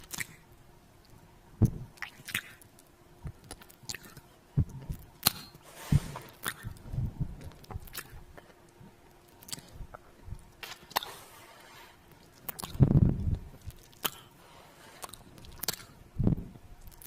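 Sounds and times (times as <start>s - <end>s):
kissing and lip-smacking: 0.0s - 5.6s, 6.4s - 8.8s, 9.4s - 10.0s, 10.6s - 11.2s, 12.4s - 14.3s, 15.0s - 16.0s.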